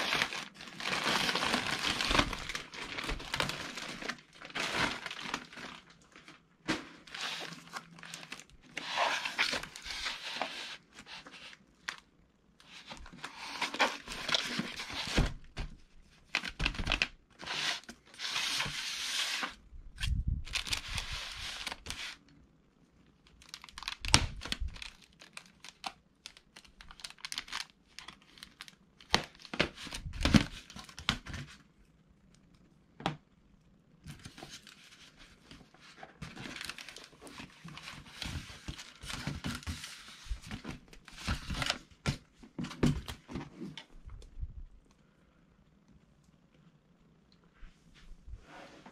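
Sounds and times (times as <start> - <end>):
wrapping crinkling and tearing: 0.0 - 15.6, 16.2 - 22.2, 23.2 - 31.5, 34.1 - 41.9.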